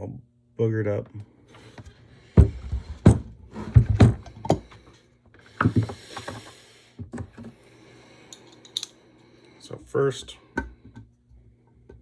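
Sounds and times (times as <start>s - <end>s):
hard objects knocking on workbench: 2.4s - 4.7s, 5.6s - 6.3s.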